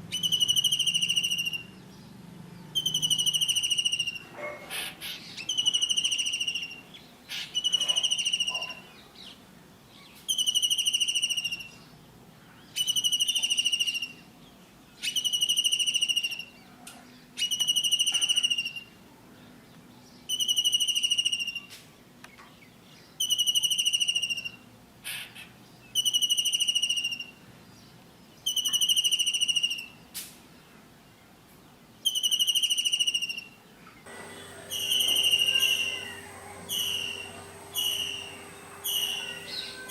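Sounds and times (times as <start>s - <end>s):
kingfisher shrill trilled call: 34.2s - 39.9s.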